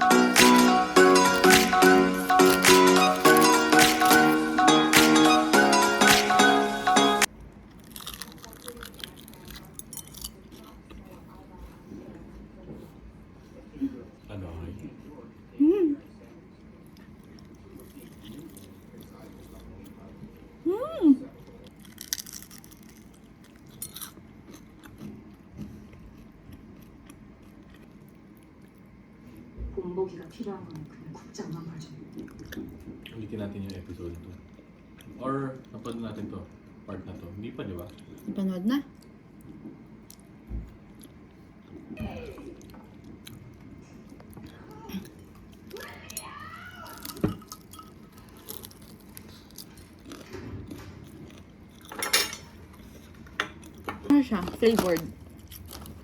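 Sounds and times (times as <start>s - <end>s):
quiet chewing: 7.2s - 20.6s, 21.2s - 56.0s
cutlery clinking on plates: 51.8s - 52.6s.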